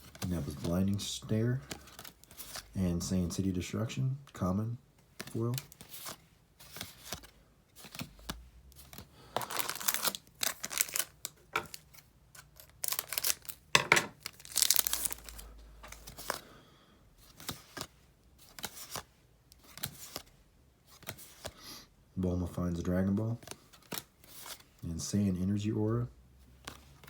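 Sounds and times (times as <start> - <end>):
cards being handled: 0.0 - 3.4, 5.0 - 16.5, 17.2 - 20.3, 20.9 - 21.6, 23.0 - 24.8, 26.5 - 27.0
wrapper tearing and crinkling: 9.4 - 15.5.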